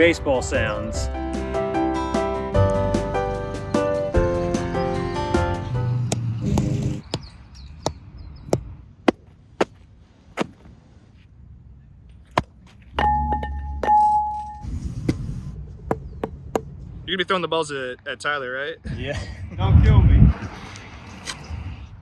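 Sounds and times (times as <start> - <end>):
clear ringing tone: 13.0 - 14.6
sharp knocks: 15.9 - 16.7.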